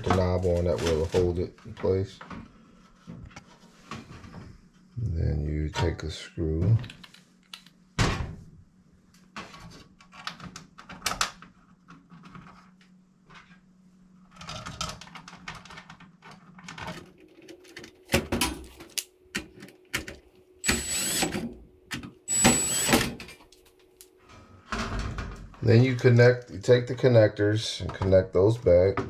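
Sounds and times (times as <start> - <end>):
cordless drill bursts: 20.6 - 21.5, 22.3 - 23.2.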